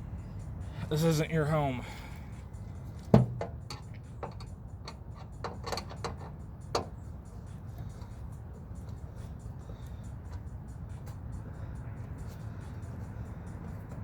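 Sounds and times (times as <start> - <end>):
microwave parts clicking and knocking: 3.1 - 7.0.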